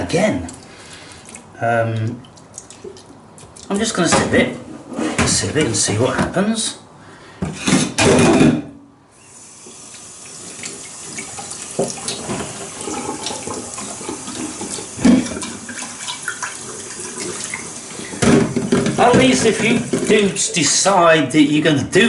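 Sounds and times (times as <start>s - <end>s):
water running in a sink: 9.2s - 20.9s.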